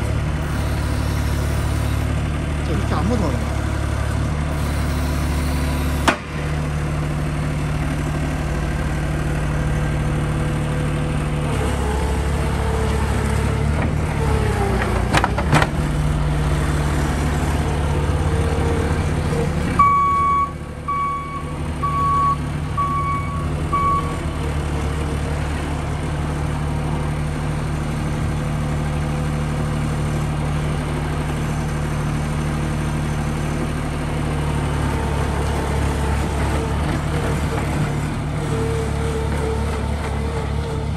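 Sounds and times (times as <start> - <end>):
loader engine running: 0.0 - 40.9
reversing alarm beeps: 0.4 - 2.1, 4.6 - 6.1, 19.8 - 24.2.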